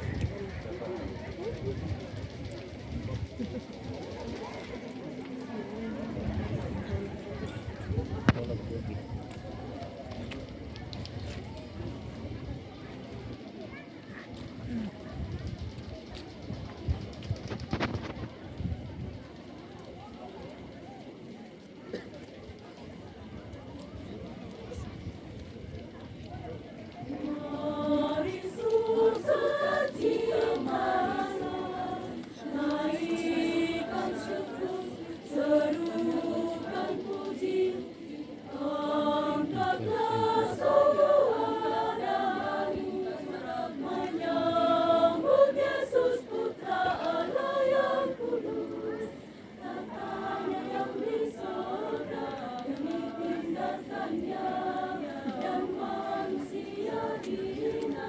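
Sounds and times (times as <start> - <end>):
women's choir singing: 27.0 - 58.0.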